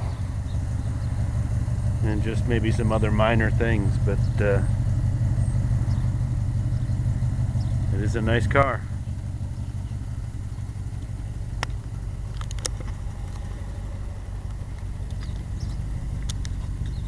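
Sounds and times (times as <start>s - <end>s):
car engine idling: 0.0s - 17.0s
sharp clicks: 11.0s - 13.6s, 14.4s - 17.0s.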